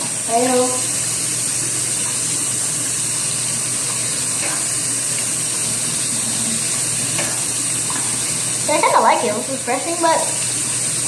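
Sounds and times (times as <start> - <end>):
water running from a tap: 0.0 - 11.0.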